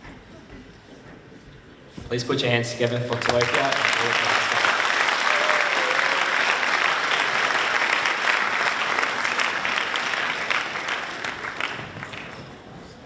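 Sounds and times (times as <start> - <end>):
audience applauding: 2.7 - 13.0.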